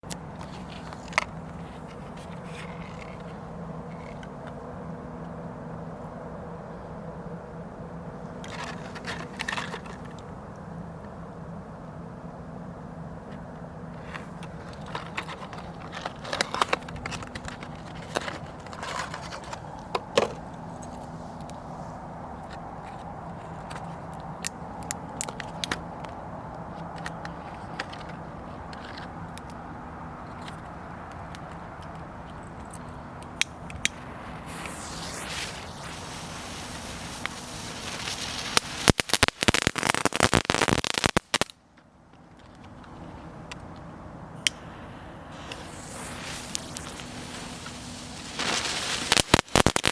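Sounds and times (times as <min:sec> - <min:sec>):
firework crackling pops: 0:33.4 - 0:41.6, 0:44.4 - 0:49.9.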